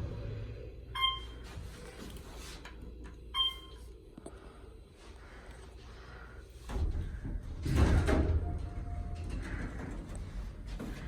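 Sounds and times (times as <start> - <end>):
low rumble: 0.0 - 1.0
elevator doors sliding: 6.6 - 11.0.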